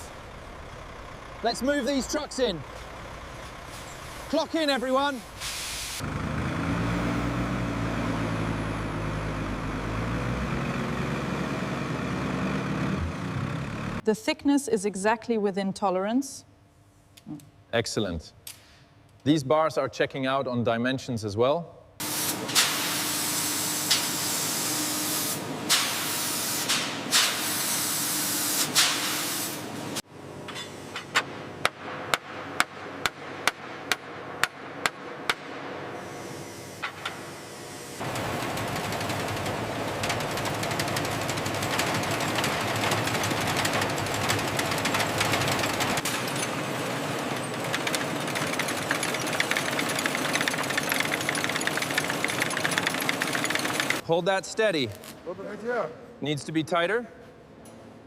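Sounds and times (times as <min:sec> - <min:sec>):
truck engine running: 0:00.0 - 0:05.4, 0:06.0 - 0:14.0, 0:38.0 - 0:54.0
steady hiss: 0:03.7 - 0:06.0.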